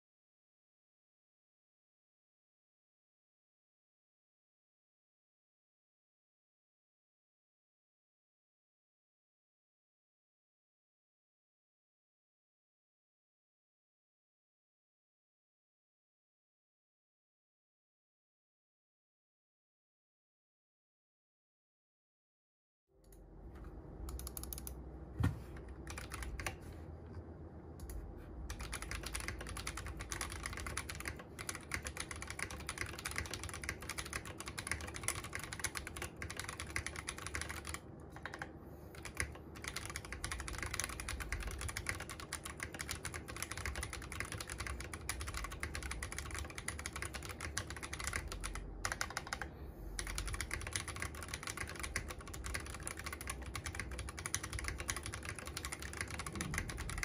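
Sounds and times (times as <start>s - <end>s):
mechanical keyboard typing: 24.0s - 24.8s, 25.6s - 26.6s, 27.8s - 57.0s.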